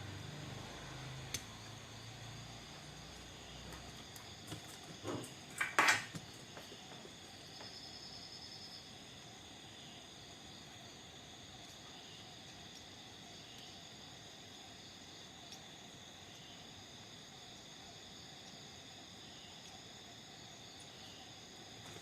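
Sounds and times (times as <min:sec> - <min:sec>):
faint steady hiss: 0:00.0 - 0:22.0
small clicks and knocks: 0:03.7 - 0:07.8.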